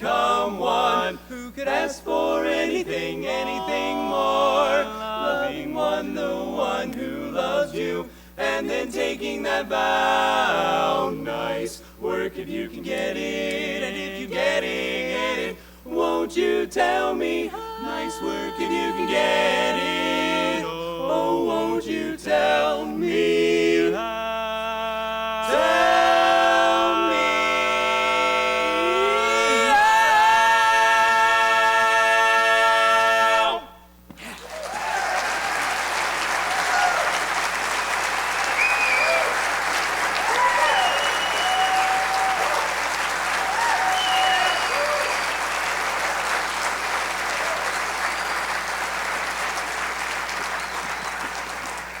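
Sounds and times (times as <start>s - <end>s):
barbershop quartet singing a cappella: 0.0s - 33.9s, 37.8s - 45.6s
audience applauding: 34.2s - 52.0s.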